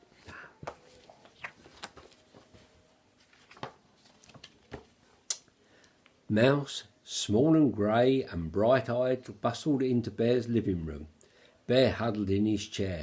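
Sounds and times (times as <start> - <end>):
soft rustle: 0.0 - 5.3.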